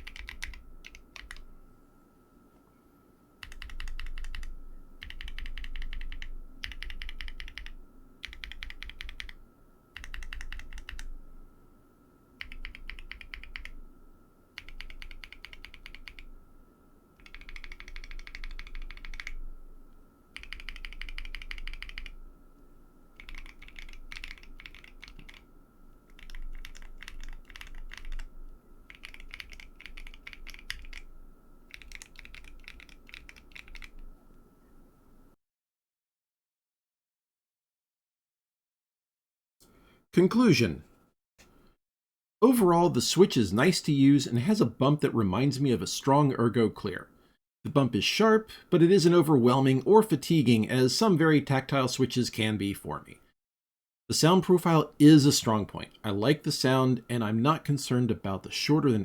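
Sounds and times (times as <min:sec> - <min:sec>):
keyboard typing clicks: 0:00.0 - 0:01.5, 0:03.4 - 0:09.4, 0:10.0 - 0:11.1, 0:12.4 - 0:13.8, 0:14.6 - 0:16.3, 0:17.2 - 0:19.4, 0:20.4 - 0:22.2, 0:23.2 - 0:25.4, 0:26.1 - 0:28.3, 0:28.9 - 0:31.1, 0:31.7 - 0:34.1.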